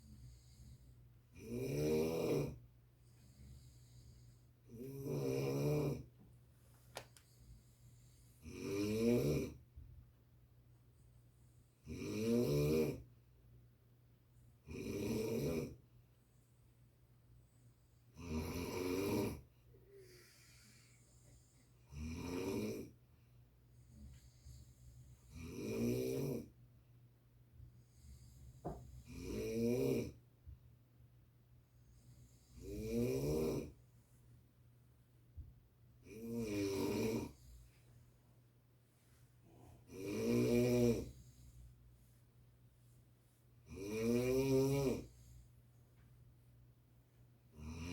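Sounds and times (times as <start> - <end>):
quiet breathing: 0.0 - 1.5, 2.4 - 10.1, 10.7 - 12.0, 15.6 - 25.6, 27.5 - 30.3, 31.5 - 46.6
person snoring: 0.0 - 2.6, 3.2 - 6.1, 8.1 - 9.6, 11.8 - 13.0, 14.6 - 15.8, 18.2 - 23.0, 23.9 - 26.5, 27.9 - 30.2, 32.2 - 33.8, 36.0 - 37.6, 39.5 - 41.5, 43.7 - 45.3, 47.6 - 47.9.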